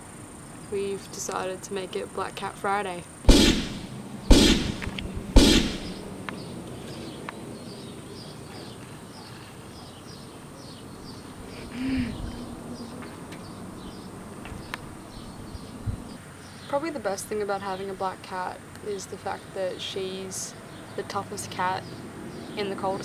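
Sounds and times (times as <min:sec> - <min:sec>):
swishing bursts sweeping down: 0:03.3 - 0:06.2
birds chirping: 0:03.3 - 0:16.9.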